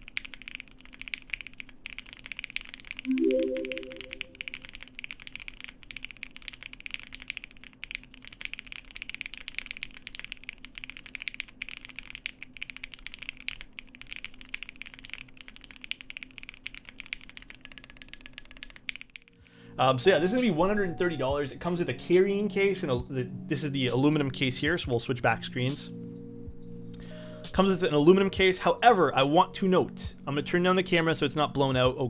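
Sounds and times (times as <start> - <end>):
mechanical keyboard typing: 0.0 - 19.4.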